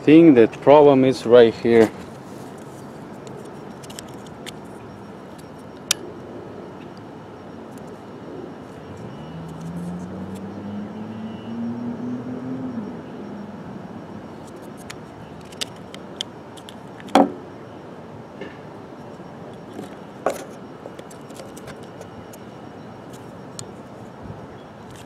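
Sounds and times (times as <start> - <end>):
small metallic clicks and rattles: 2.6 - 4.7.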